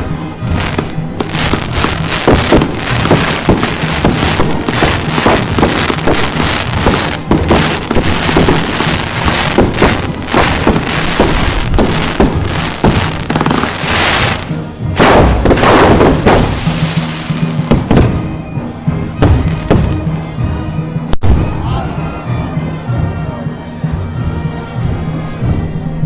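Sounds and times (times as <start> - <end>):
firecrackers banging: 0.0 - 18.4, 19.2 - 20.1
band music: 0.0 - 26.0.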